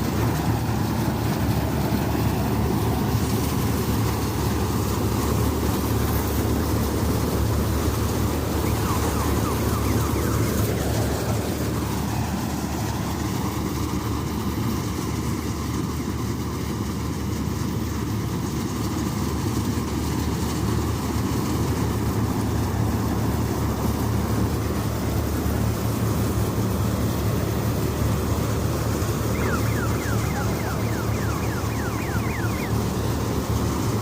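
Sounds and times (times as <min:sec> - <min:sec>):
combine harvester running: 0:00.0 - 0:34.0
machine whine: 0:29.0 - 0:34.0.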